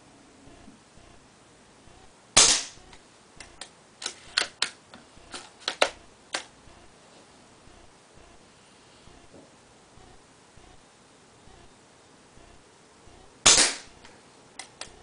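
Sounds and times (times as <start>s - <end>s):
airsoft rifle shot: 2.4s - 2.8s, 13.4s - 14.0s.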